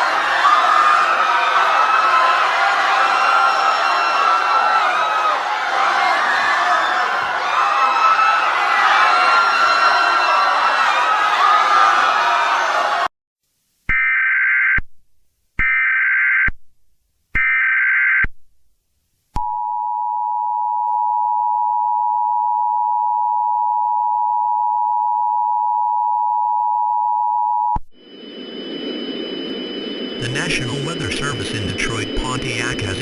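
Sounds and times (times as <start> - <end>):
two-tone attention signal: 22.2 - 33.0
screechy digital bursts: 28.0 - 33.0.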